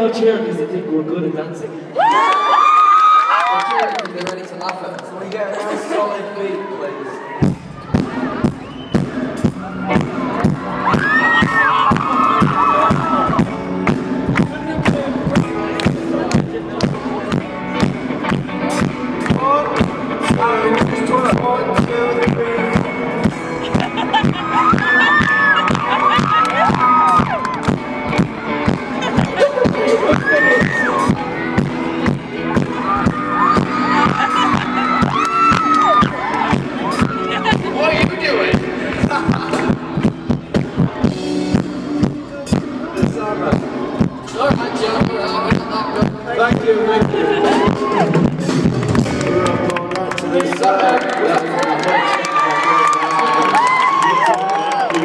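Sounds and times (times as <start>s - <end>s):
crowd screaming and cheering: 1.7s - 55.0s
dance beat: 21.7s - 49.7s.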